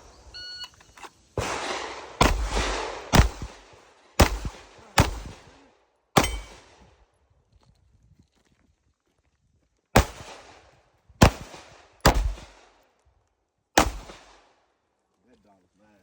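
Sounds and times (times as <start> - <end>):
shot timer beep: 0.1 - 0.9
gunshots with echo: 1.4 - 5.5.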